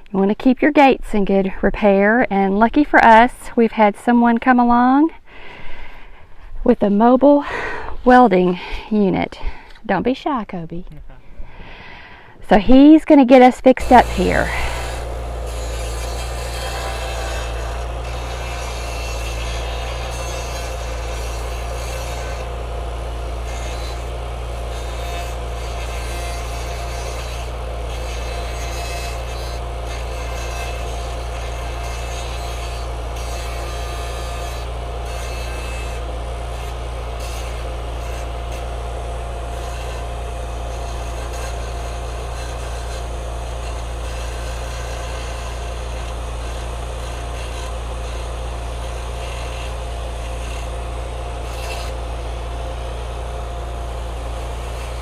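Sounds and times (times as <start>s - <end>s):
arc welding crackling hiss: 13.8s - 55.0s
welding unit engine hum: 13.8s - 55.0s.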